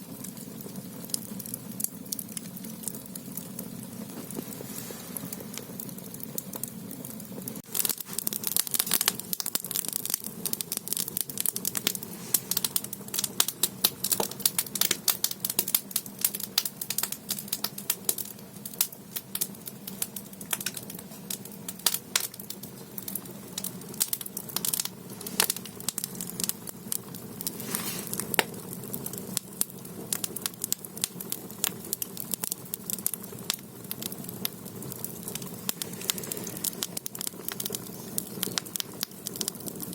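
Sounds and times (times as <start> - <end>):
firewood crackling and popping: 0.0 - 39.9
low rumble of fire: 0.0 - 39.9.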